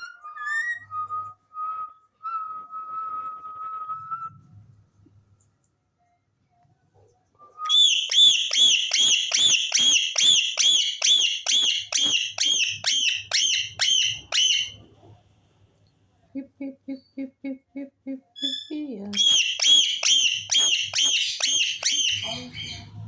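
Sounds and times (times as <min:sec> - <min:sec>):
parrot whistling high notes: 0:07.6 - 0:14.8, 0:18.4 - 0:22.8.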